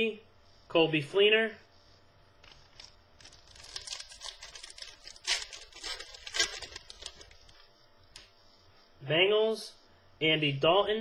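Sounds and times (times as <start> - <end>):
card crackles: 2.4 - 8.3
cards rustling and scraping: 2.4 - 8.4.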